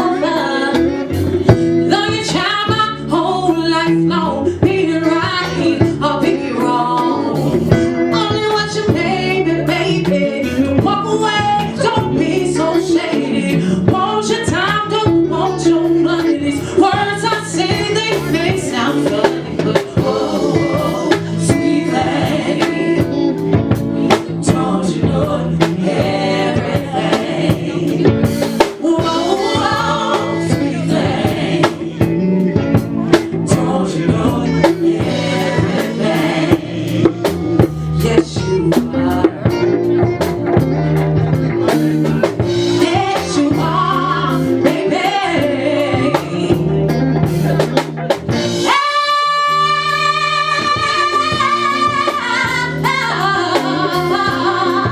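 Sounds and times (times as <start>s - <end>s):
lead vocal singing: 0.0s - 40.9s, 42.0s - 47.6s, 48.3s - 54.9s
live band playing: 0.0s - 54.9s.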